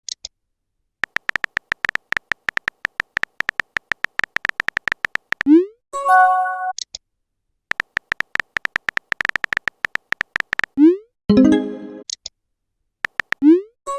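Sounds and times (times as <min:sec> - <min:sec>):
held synthesizer chord: 0:11.3 - 0:12.0.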